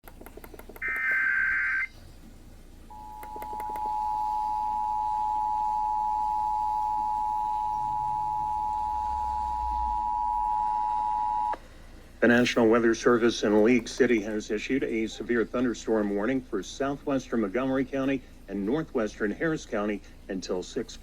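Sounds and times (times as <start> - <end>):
harsh digital header tones: 0.3 - 1.9, 2.9 - 11.6
two-tone alert signal: 2.9 - 11.6.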